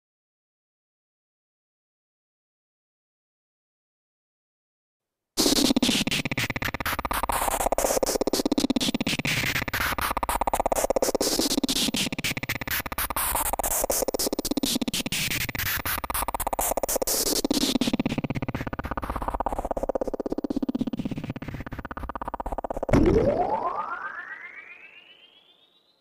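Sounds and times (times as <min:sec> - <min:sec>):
synthesizer buzzing pulses: 0:15.4 - 0:26.0
synthesizer falling pitch sweep: 0:21.3 - 0:26.0.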